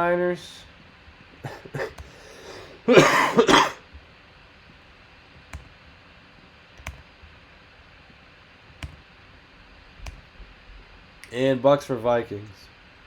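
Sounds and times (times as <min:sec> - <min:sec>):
room hiss: 0:00.0 - 0:13.0
sharp clicks: 0:05.4 - 0:05.8, 0:06.8 - 0:07.1, 0:08.7 - 0:09.1, 0:10.0 - 0:10.3.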